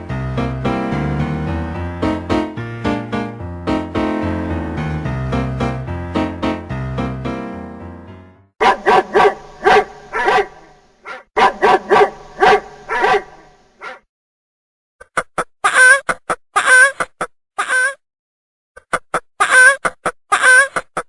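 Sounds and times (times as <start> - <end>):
animal making sharp calls: 8.6 - 14.0
dog barking: 8.6 - 14.0.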